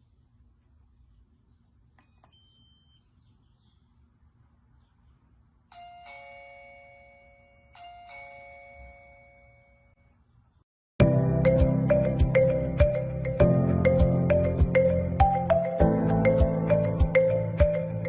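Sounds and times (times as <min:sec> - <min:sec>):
two-note doorbell chime: 0:05.7 - 0:10.0.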